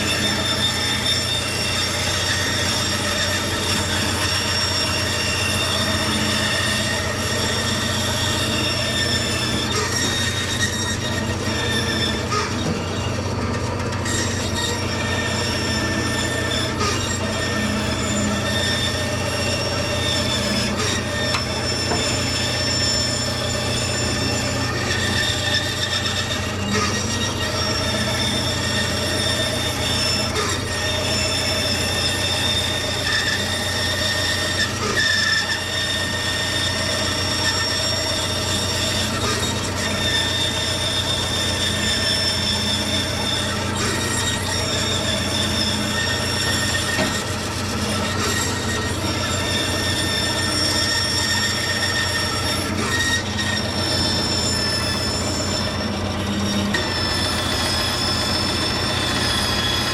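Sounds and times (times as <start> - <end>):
woodworking power tool whining: 0.0 - 59.9.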